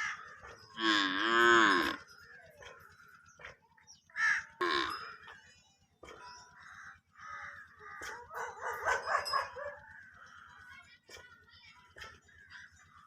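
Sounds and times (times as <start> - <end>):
animal calls: 0.0 - 5.4, 6.0 - 10.6.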